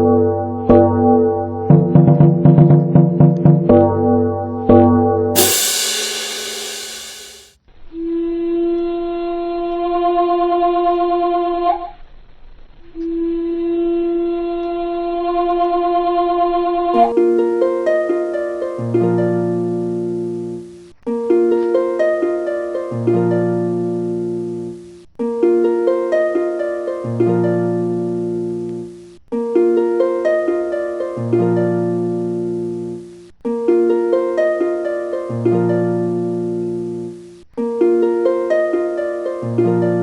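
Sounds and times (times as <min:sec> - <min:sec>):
low bass note: 0:05.4 - 0:07.5.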